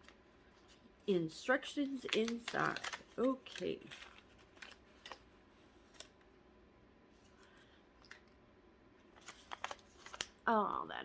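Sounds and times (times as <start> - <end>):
packaging clicks: 2.0 - 5.2.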